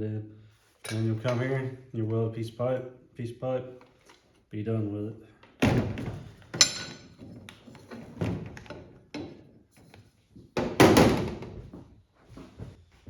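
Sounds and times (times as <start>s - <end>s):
parts knocking and clunking: 0.8s - 1.7s, 5.6s - 11.9s.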